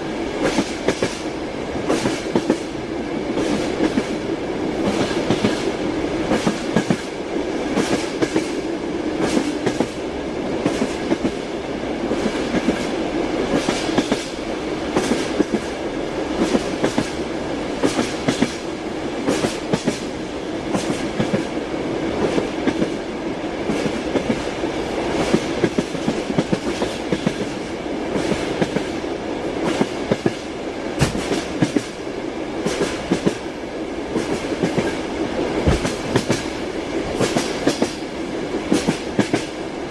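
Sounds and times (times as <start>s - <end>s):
train wheels clacking over rail joints: 0.4s - 2.7s, 6.3s - 8.6s, 9.2s - 10.0s, 13.5s - 15.8s, 17.8s - 18.6s, 19.2s - 20.1s, 25.2s - 28.9s, 29.6s - 32.0s, 35.6s - 38.1s, 38.7s - 39.6s.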